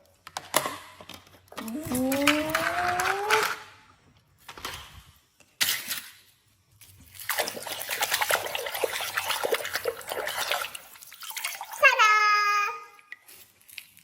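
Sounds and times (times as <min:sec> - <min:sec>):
water splashing and trickling: 0:07.1 - 0:14.0.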